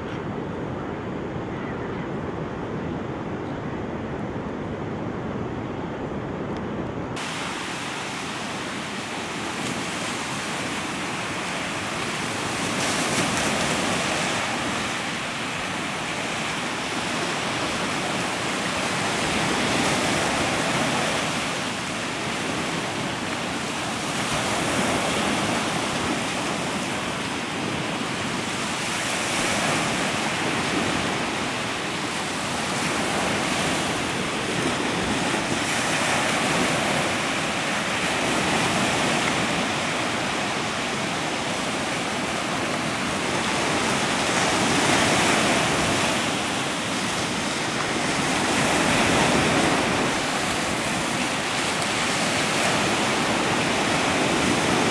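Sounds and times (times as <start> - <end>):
ocean surf washing onto shore: 2.1 - 54.9.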